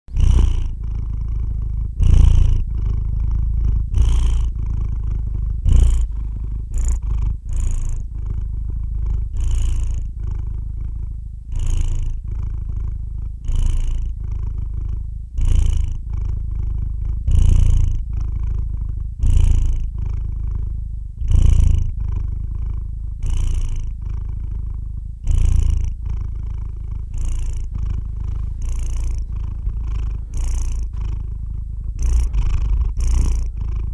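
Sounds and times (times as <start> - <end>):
cat purring: 0.0 - 33.9
breathy hiss: 26.9 - 33.9.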